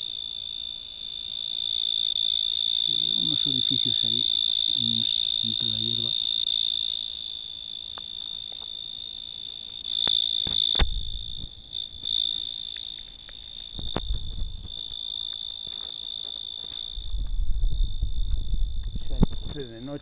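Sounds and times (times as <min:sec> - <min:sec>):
cricket trilling: 0:00.0 - 0:20.0
low thumps: 0:10.5 - 0:11.7, 0:13.7 - 0:15.0, 0:16.9 - 0:19.7.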